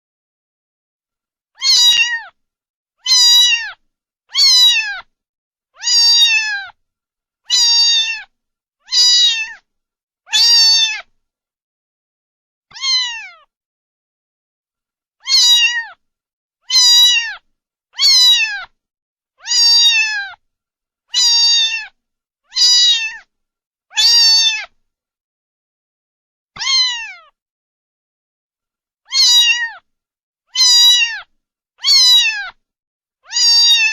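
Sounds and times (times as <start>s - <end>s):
cat meowing: 1.6s - 2.4s, 3.0s - 5.1s, 5.8s - 6.8s, 7.5s - 9.6s, 10.3s - 11.1s, 12.7s - 13.5s, 15.2s - 16.0s, 16.6s - 18.8s, 19.4s - 20.4s, 21.1s - 23.3s, 23.9s - 24.8s, 26.6s - 27.4s, 29.1s - 29.9s, 30.5s - 32.6s, 33.2s - 33.9s.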